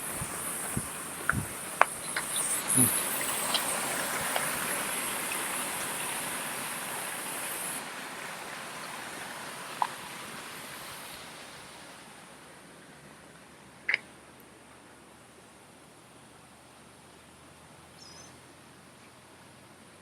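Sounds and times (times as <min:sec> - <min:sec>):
high insect buzz: 0:00.0 - 0:07.8.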